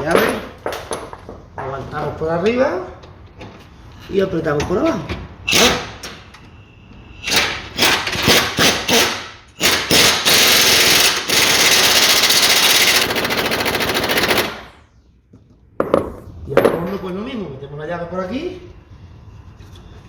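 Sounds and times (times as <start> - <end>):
impact wrench hammering: 5.5 - 6.2, 7.2 - 14.7.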